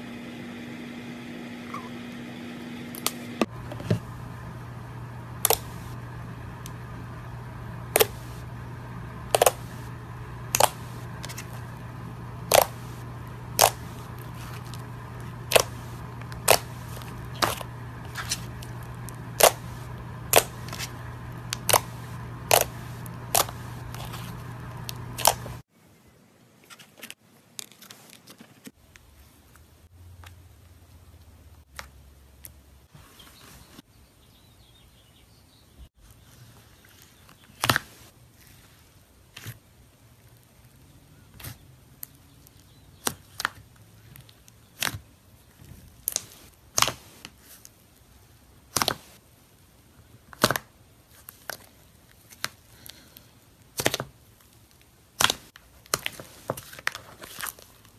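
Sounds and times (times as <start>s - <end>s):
low hum: 0.0s - 25.6s
slime squishing: 9.1s - 25.6s.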